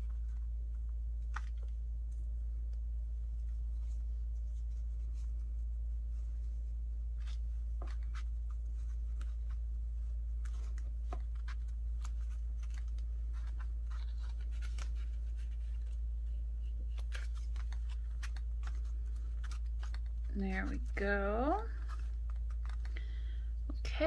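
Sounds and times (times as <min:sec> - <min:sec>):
steady low hum: 0:00.0 - 0:24.0
paper handling: 0:07.0 - 0:23.4.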